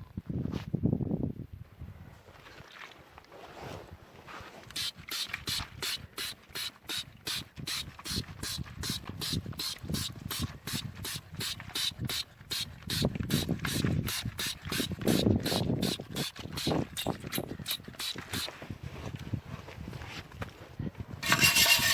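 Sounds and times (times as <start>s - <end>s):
ratchet wrench clicking: 21.2s - 21.9s.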